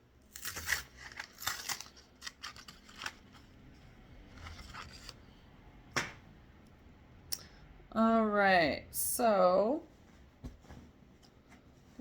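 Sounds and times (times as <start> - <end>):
wrapper crinkling and rustling: 0.3 - 3.6.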